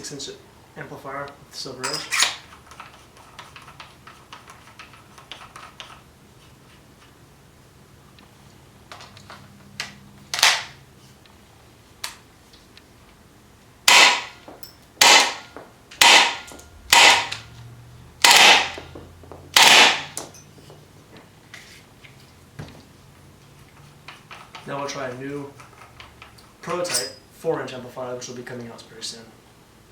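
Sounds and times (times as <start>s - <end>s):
airsoft gun shots: 13.9s - 14.4s, 15.0s - 17.5s, 18.2s - 18.9s, 19.6s - 20.2s.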